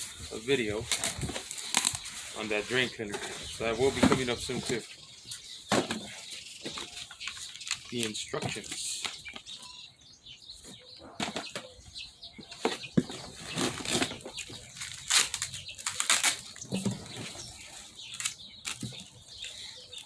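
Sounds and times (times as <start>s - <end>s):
sharp paper crackles: 6.6s - 9.2s, 13.3s - 19.6s
paper rustling and crinkling: 12.7s - 19.6s.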